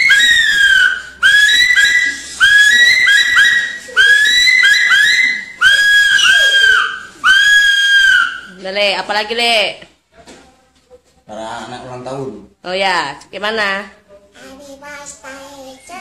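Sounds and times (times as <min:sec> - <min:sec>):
man imitating a whistle-like call: 0:00.0 - 0:08.5.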